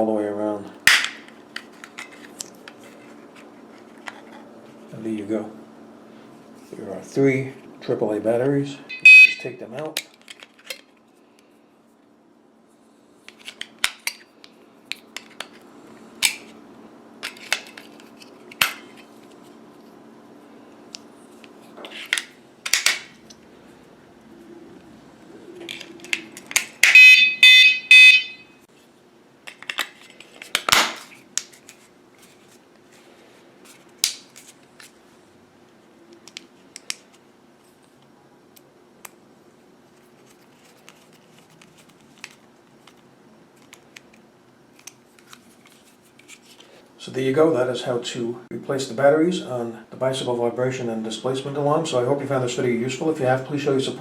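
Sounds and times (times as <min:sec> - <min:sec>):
rapid electronic alarm beeps: 0:08.9 - 0:09.5, 0:27.0 - 0:28.6.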